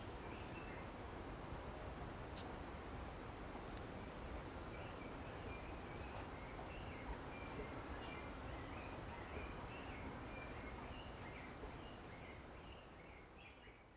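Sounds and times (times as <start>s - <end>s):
small birds chirping: 0.0s - 1.1s, 4.2s - 13.9s.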